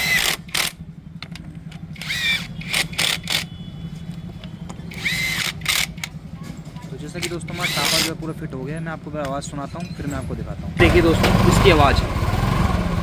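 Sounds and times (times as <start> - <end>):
sharp tool clicks: 0.0 - 3.6, 4.8 - 6.2, 7.1 - 8.2
power driver whining: 0.0 - 6.3, 6.9 - 8.4
steady low hum: 0.0 - 11.6.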